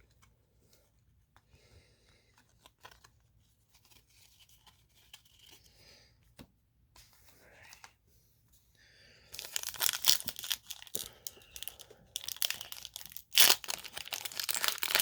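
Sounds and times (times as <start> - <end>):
foil wrapper crinkling and tearing: 9.4 - 15.0.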